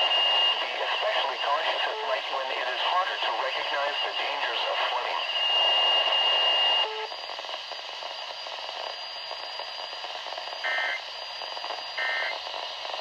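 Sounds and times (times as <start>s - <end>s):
radio static hiss: 0.0s - 7.1s, 10.6s - 11.0s, 11.9s - 12.4s
buzzy digital data tones: 10.6s - 11.0s, 12.0s - 12.4s.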